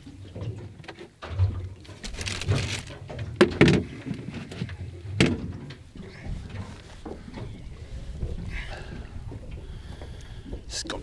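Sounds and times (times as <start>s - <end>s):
knocks and thumps on a boat: 0.0s - 11.0s
wind and water rumble: 0.0s - 11.0s.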